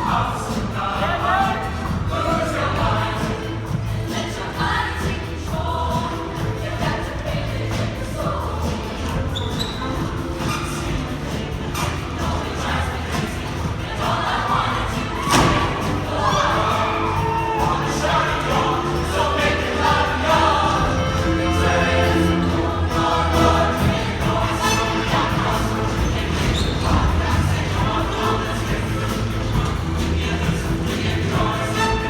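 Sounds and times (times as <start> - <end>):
group of voices singing: 0.0 - 32.0
steady bass line: 0.0 - 32.0
live band music: 14.9 - 32.0.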